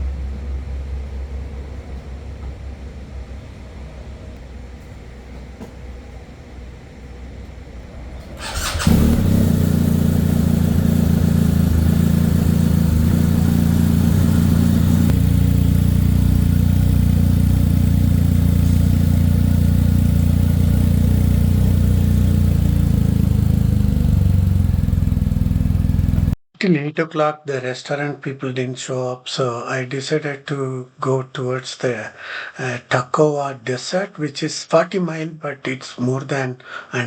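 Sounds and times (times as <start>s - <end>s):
electric starter whine: 4.4s - 26.4s
motorcycle engine running: 8.0s - 26.4s.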